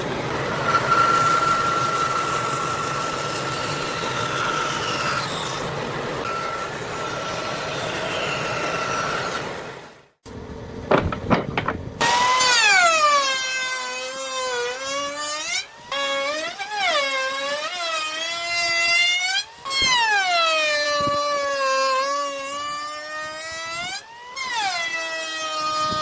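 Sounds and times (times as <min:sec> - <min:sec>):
sharp knocks: 0:10.9 - 0:11.9.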